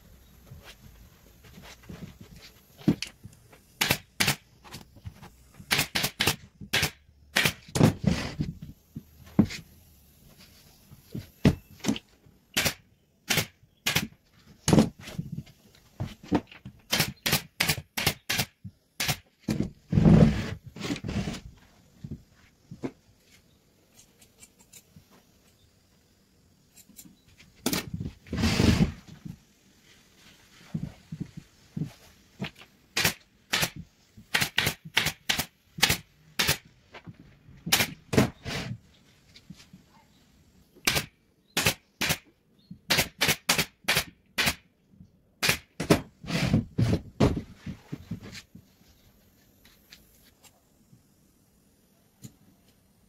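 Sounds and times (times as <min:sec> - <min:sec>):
hand tool scraping: 0:19.9 - 0:21.6, 0:28.2 - 0:29.2, 0:46.2 - 0:48.5.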